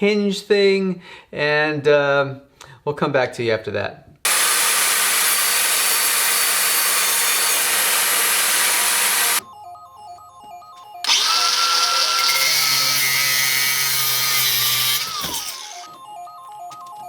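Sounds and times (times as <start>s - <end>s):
power tool cutting wood: 4.3s - 9.4s, 11.0s - 16.0s.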